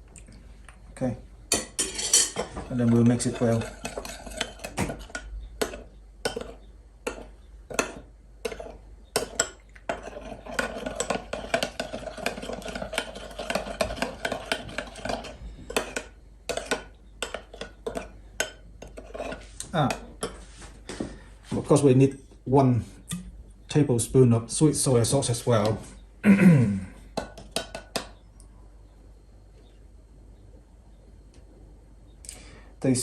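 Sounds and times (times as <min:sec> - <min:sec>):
utensil clinking against a bowl: 0:01.5 - 0:20.4, 0:27.2 - 0:28.2
utensil stirring sauce in a bowl: 0:01.5 - 0:20.7.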